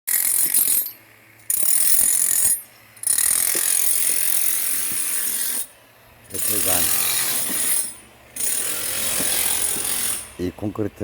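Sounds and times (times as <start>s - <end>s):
demolition hammer chiselling concrete: 1.5s - 5.7s, 6.3s - 10.7s.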